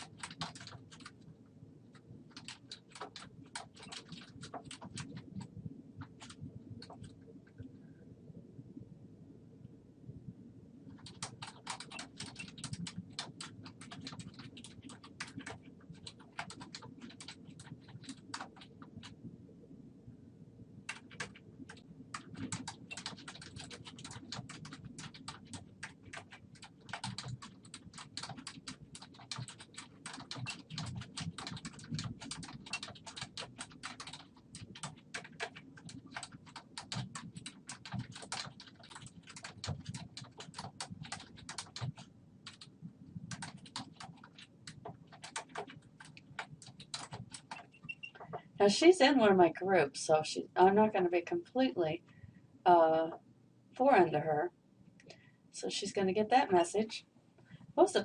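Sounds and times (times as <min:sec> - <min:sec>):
typing on computer keyboard: 0:00.0 - 0:01.2, 0:01.9 - 0:07.2, 0:10.9 - 0:19.2, 0:20.9 - 0:48.5.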